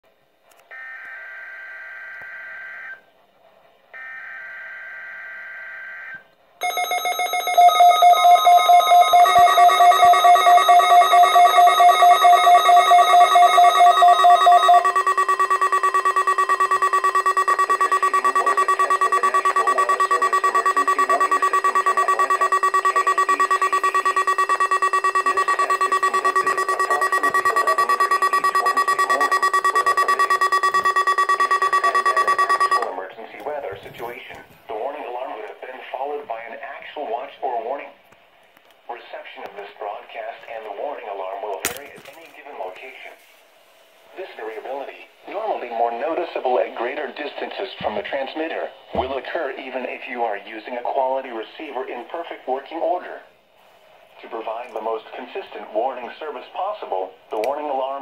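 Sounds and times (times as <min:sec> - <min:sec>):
rapid alert beeps: 0:06.6 - 0:32.9
steady alert tone: 0:06.6 - 0:32.9
raspy data warble: 0:06.7 - 0:32.9.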